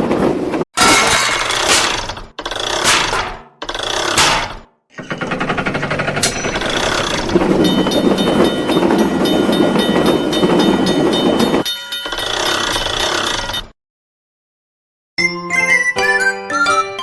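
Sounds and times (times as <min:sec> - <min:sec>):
passing train rumbling: 0:00.0 - 0:00.6, 0:06.2 - 0:11.7
railway crossing bell ringing: 0:06.2 - 0:13.6.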